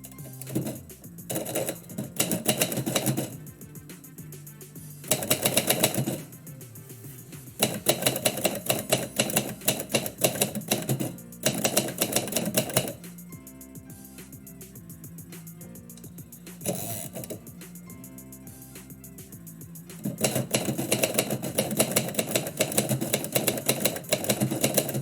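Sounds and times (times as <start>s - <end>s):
typewriter keystrokes: 0.0s - 3.6s, 5.1s - 6.4s, 7.6s - 13.1s, 19.9s - 25.0s
background music: 0.0s - 25.0s.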